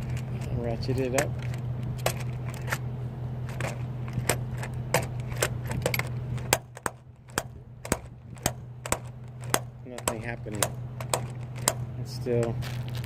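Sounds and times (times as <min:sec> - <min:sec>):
steady low hum: 0:00.0 - 0:13.0
ratchet clicking: 0:03.5 - 0:11.9.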